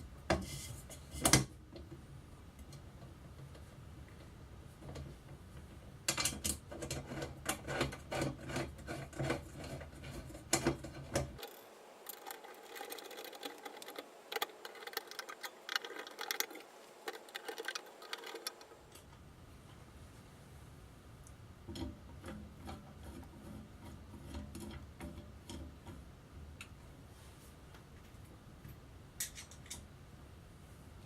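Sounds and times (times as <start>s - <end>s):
hand tools clicking and tapping: 10.0s - 19.1s.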